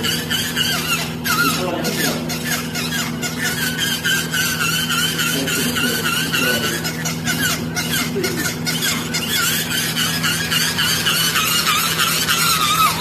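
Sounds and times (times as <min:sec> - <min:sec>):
squeaky toy squeaking: 0:00.0 - 0:13.0
steady low hum: 0:00.0 - 0:13.0.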